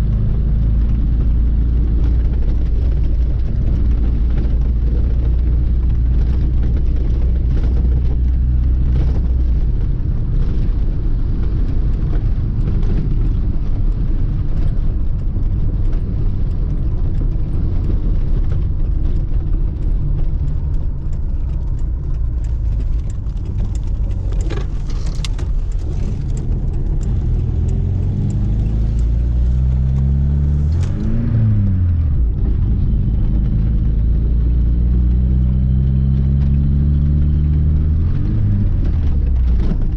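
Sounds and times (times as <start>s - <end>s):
car engine running: 0.0s - 39.9s
engine revving: 20.1s - 39.9s.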